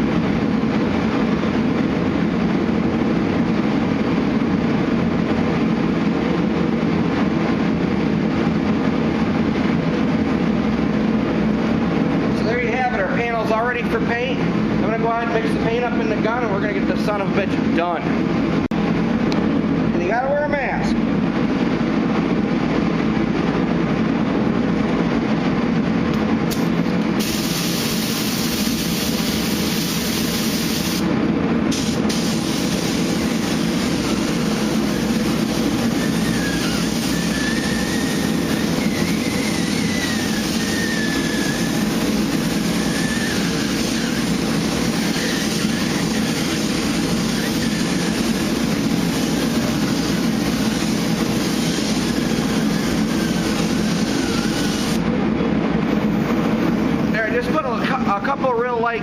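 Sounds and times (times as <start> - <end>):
low machine rumble: 0.0 - 59.0
spray gun air hiss: 26.5 - 31.1, 31.7 - 55.0.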